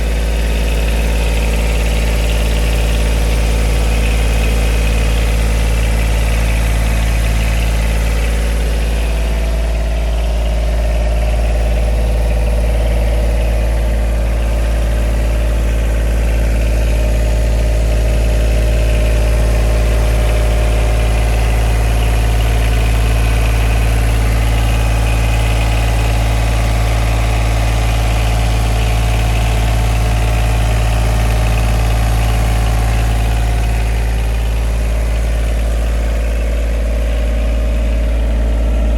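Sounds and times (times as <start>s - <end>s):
diesel engine humming: 0.0s - 38.9s.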